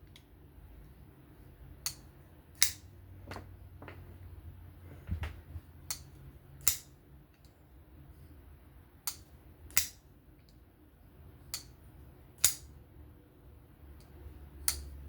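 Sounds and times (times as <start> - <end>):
folding knife clicking: 2.6 - 2.8, 5.9 - 7.5, 9.0 - 10.0, 12.4 - 12.7, 14.0 - 15.0.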